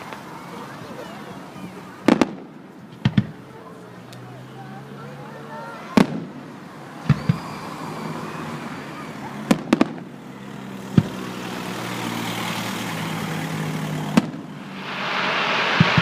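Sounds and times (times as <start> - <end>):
fireworks bangs: 1.6 - 3.4, 5.6 - 7.7, 9.4 - 10.1, 10.8 - 11.3, 13.2 - 16.0
firework hiss: 9.1 - 16.0.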